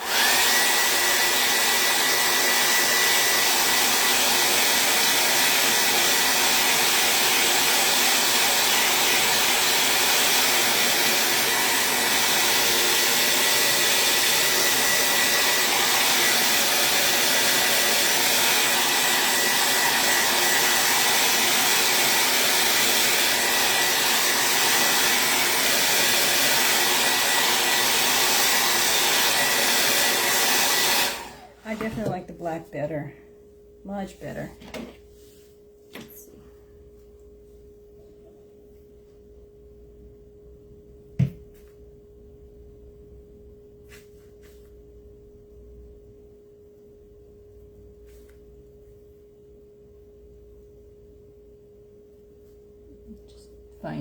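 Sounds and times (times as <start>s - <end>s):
blow dryer running: 0.0s - 32.9s.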